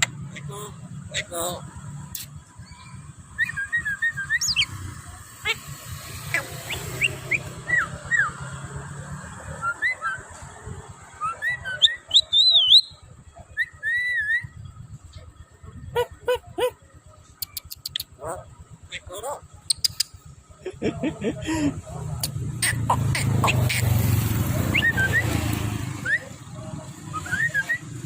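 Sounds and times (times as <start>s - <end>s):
bird whistling and chirping: 2.2s - 4.8s, 6.3s - 8.5s, 9.5s - 10.3s, 11.2s - 14.6s, 17.4s - 18.2s, 19.7s - 20.1s, 24.7s - 25.4s, 27.1s - 28.0s.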